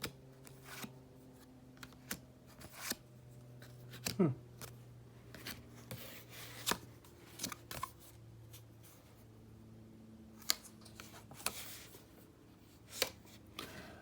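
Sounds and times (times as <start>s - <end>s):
low steady hum: 0.0s - 14.0s
cards clicking and snapping: 1.8s - 3.0s, 3.6s - 8.0s, 10.4s - 11.7s, 12.9s - 13.8s.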